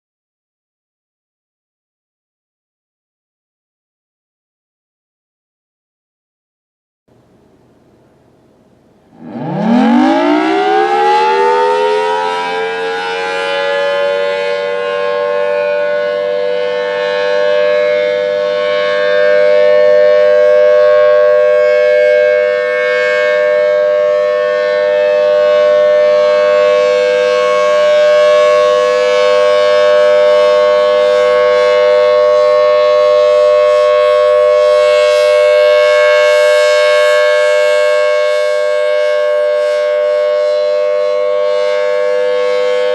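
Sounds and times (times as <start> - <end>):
tornado siren wailing: 9.1 - 42.9.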